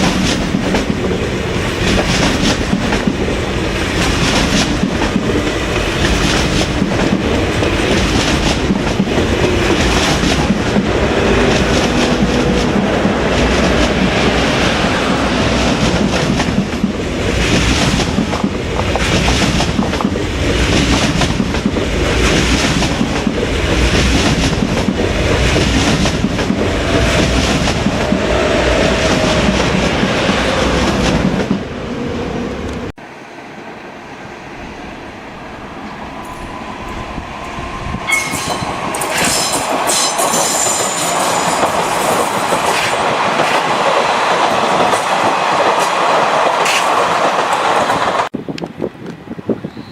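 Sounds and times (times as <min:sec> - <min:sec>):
train wheels clicking over rail joints: 0:00.0 - 0:14.0, 0:15.7 - 0:28.2, 0:36.2 - 0:48.3
train approaching: 0:00.0 - 0:48.5
high wheel squeal: 0:36.2 - 0:42.1.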